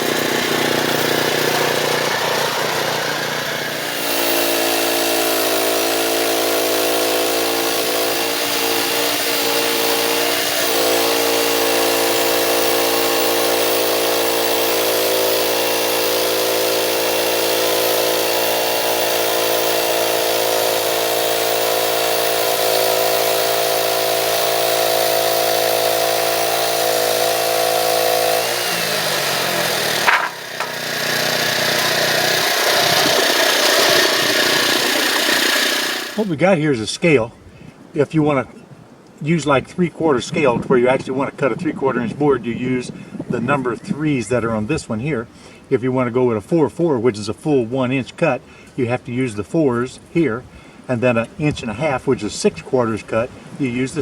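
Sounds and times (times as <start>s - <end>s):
band blade cutting wood: 0.0s - 36.3s
sawmill engine running: 0.0s - 36.3s.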